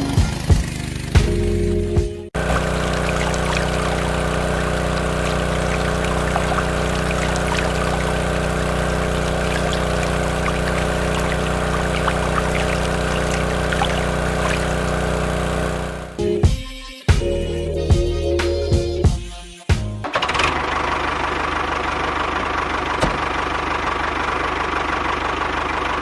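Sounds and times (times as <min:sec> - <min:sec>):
water pouring: 0:02.4 - 0:15.7
small electric water pump running: 0:02.4 - 0:16.2.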